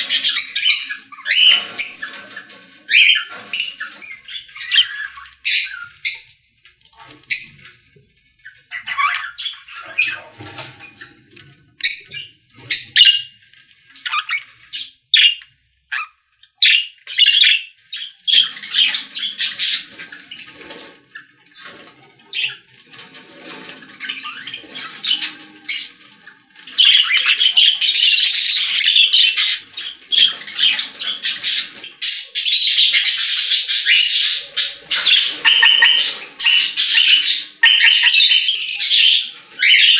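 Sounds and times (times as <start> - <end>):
nestlings chirping: 0.0 - 6.4, 26.7 - 39.9.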